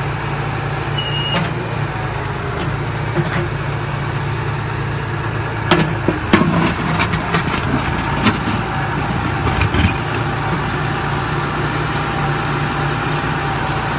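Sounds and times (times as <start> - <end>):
diesel engine running: 0.0 - 13.9
sharp knocks and clanks: 5.7 - 10.6.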